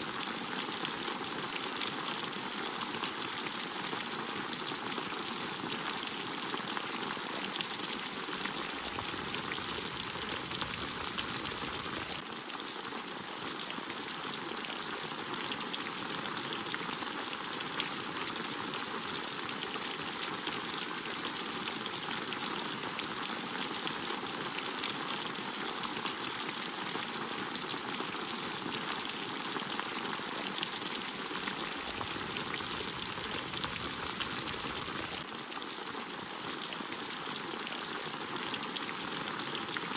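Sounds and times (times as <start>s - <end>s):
steady rain hiss: 8.2s - 12.2s, 31.1s - 35.2s
dripping ticks: 8.7s - 12.2s, 31.6s - 35.2s.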